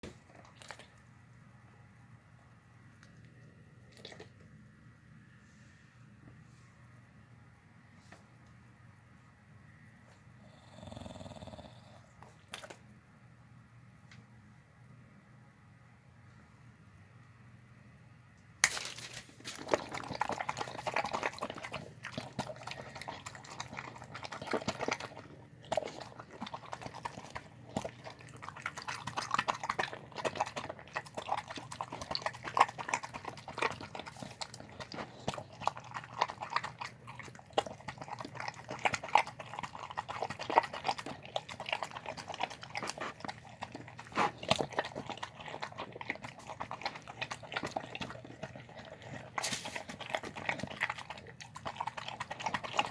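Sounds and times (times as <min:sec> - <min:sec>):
dog chewing food: 0:00.0 - 0:01.1, 0:03.8 - 0:04.5, 0:10.8 - 0:12.9, 0:18.7 - 0:52.9.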